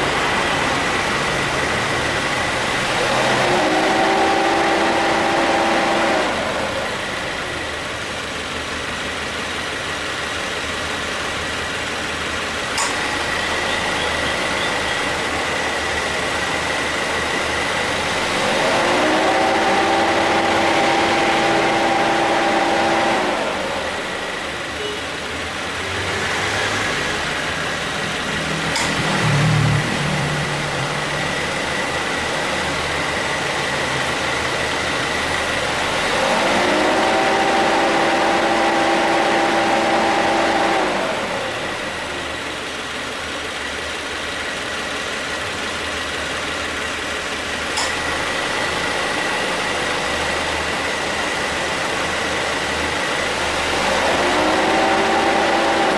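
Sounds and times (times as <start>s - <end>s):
car engine idling: 0.0s - 55.9s
ac compressor hum: 27.4s - 36.1s.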